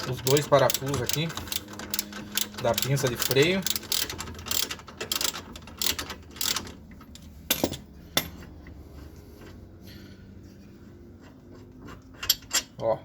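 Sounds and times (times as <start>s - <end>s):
socket ratchet clicking: 0.0s - 6.8s.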